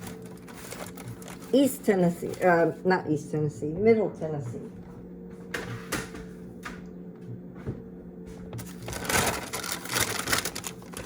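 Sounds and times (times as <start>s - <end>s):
crinkling rustle of handling: 0.0s - 2.9s, 8.5s - 11.0s
low electrical hum: 0.0s - 11.0s.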